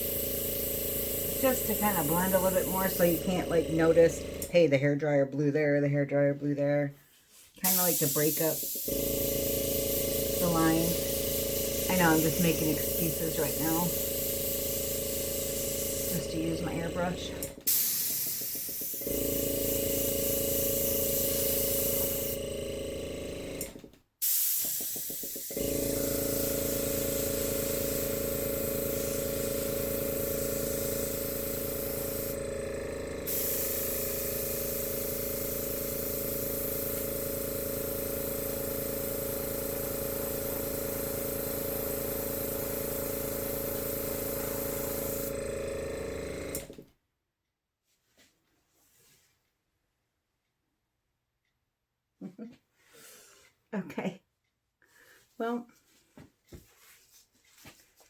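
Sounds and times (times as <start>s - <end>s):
airbrush hissing: 0.0s - 4.4s, 7.6s - 22.4s, 24.2s - 46.5s
steady hum: 0.0s - 4.5s, 7.6s - 23.8s, 24.7s - 46.6s.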